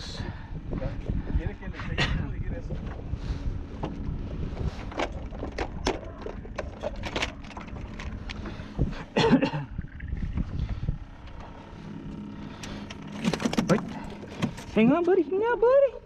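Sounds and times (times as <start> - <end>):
knocks and clatter in metal boat: 4.8 - 8.5, 13.1 - 15.0.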